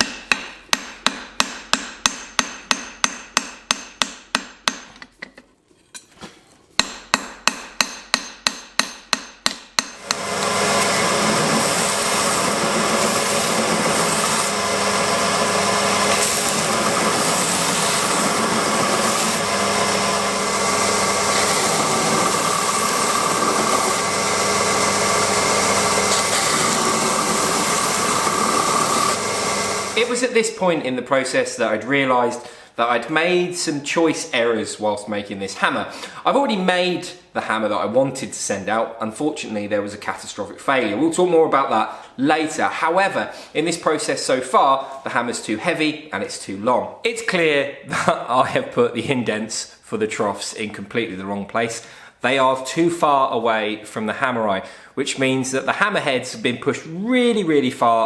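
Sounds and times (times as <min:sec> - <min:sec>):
hammer striking steel on anvil: 0:00.0 - 0:05.0, 0:06.8 - 0:10.3
loud machine noise with whine: 0:10.0 - 0:30.0.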